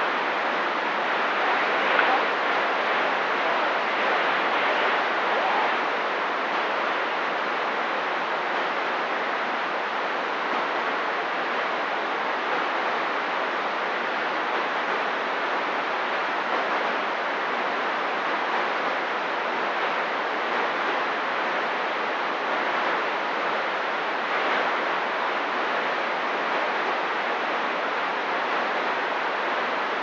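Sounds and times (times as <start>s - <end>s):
radio static hiss: 0.0s - 17.8s.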